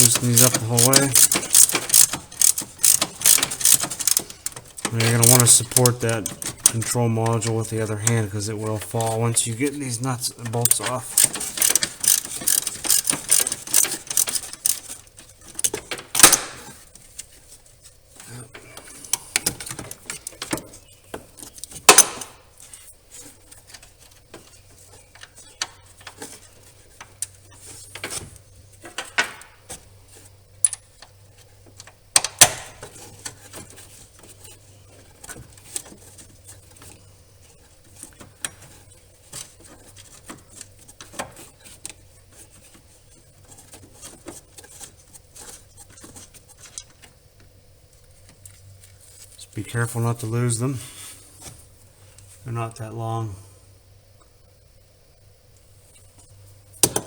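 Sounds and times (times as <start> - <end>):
metallic clicks of hand tools: 0.0 - 7.4, 10.5 - 15.0, 15.6 - 16.4.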